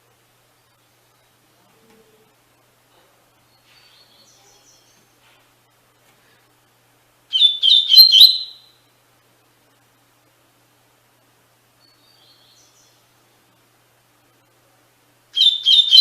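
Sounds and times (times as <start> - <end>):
bird singing: 3.4 - 5.2, 7.3 - 8.9, 11.8 - 13.2, 15.4 - 16.0.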